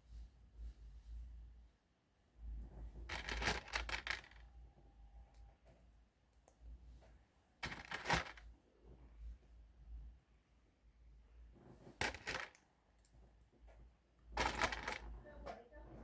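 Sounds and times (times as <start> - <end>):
plastic toy bricks clattering: 3.1 - 4.4, 7.6 - 8.4, 12.0 - 12.6, 14.4 - 15.2
handling plastic pieces: 14.4 - 15.1.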